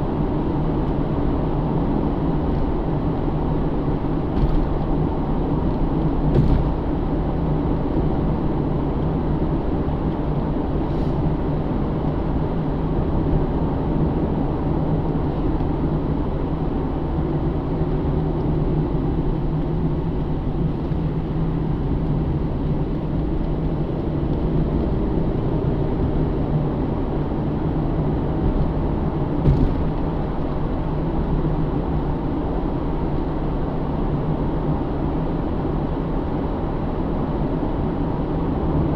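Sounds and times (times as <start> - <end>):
road and tyre noise: 0.0 - 38.9.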